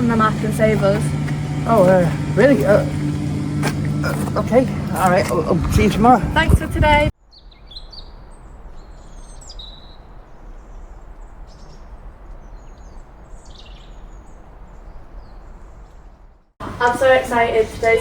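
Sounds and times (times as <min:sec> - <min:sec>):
low outdoor rumble: 0:00.0 - 0:07.1
small birds chirping: 0:00.0 - 0:16.4.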